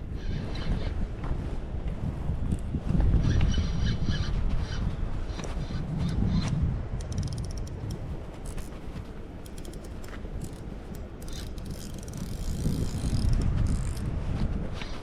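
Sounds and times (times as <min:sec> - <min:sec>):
fishing reel ratcheting click: 0:07.0 - 0:08.7, 0:09.4 - 0:14.1.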